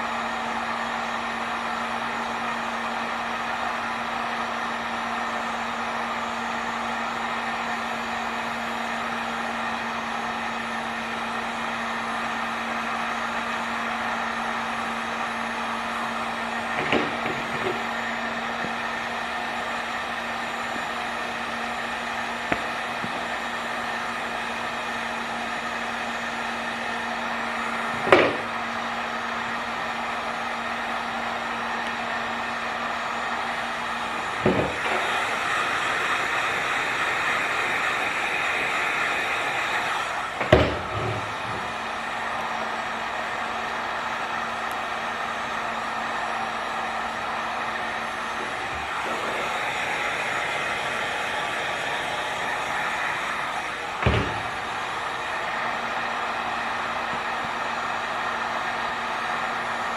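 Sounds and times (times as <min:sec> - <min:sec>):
heat gun blowing: 0:00.0 - 0:59.9.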